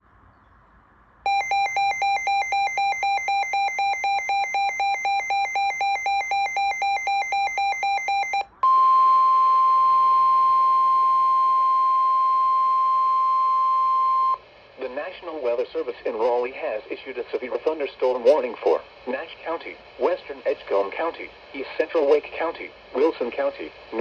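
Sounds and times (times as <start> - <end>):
rapid electronic beeping: 1.3 - 8.5
steady high alert tone: 1.3 - 12.9.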